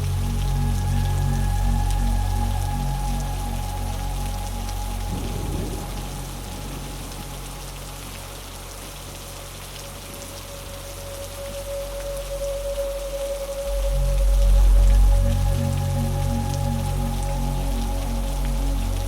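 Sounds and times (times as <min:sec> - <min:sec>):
dark ambient music drone: 0:00.0 - 0:19.0
steady rain: 0:00.0 - 0:19.0.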